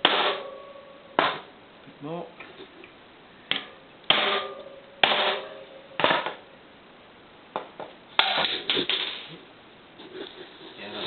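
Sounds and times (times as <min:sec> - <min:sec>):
hammer striking metal: 0:00.0 - 0:01.5, 0:03.5 - 0:06.4.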